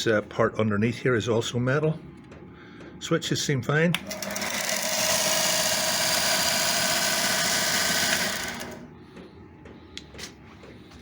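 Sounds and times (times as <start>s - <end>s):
belt sander running: 4.0s - 8.9s.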